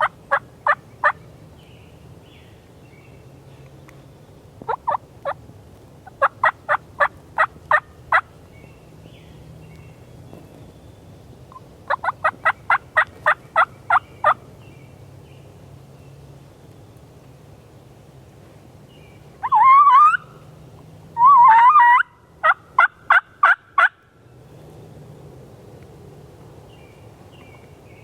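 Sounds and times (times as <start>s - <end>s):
turkey yelping: 11.9s - 14.4s, 19.4s - 20.3s, 21.2s - 24.0s.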